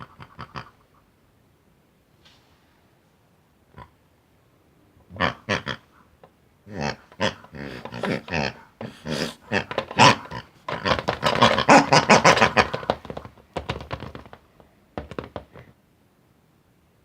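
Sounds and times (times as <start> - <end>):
pig oinking: 0.0 - 0.8, 5.1 - 5.9, 6.7 - 13.2.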